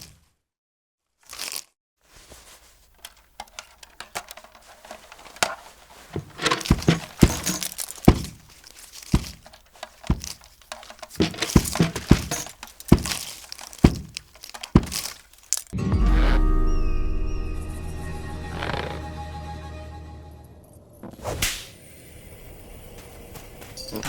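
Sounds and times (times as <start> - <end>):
crunching crinkling rustles: 1.2 - 15.8
knocks and thuds: 4.4 - 15.7.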